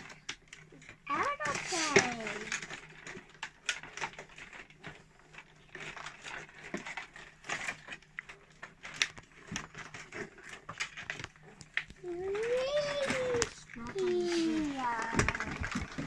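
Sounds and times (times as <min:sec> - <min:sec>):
packaging clicks and rustles: 0:00.0 - 0:16.0.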